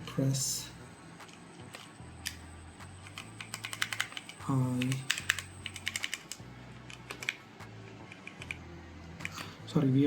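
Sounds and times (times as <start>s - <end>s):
mechanical keyboard keys clicking: 3.0s - 7.4s, 8.0s - 8.6s.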